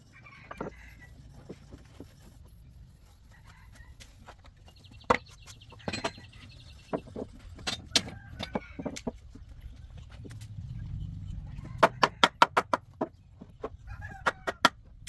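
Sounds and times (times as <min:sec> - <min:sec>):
low steady hum: 0:04.6 - 0:11.9
sharp knocks and clicks: 0:04.9 - 0:15.0.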